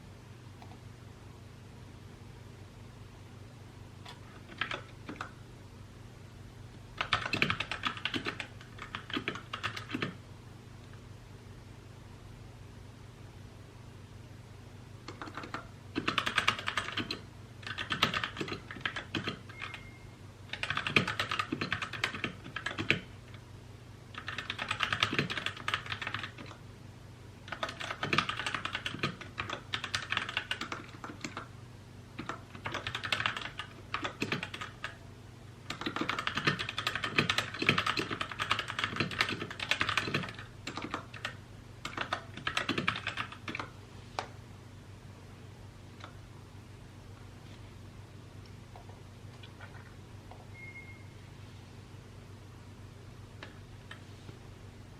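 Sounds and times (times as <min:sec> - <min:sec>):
mechanical keyboard typing: 0:04.0 - 0:05.4, 0:07.0 - 0:10.2, 0:15.0 - 0:19.9, 0:20.5 - 0:23.4, 0:24.1 - 0:26.6, 0:27.5 - 0:31.5, 0:32.2 - 0:35.0, 0:35.7 - 0:43.7.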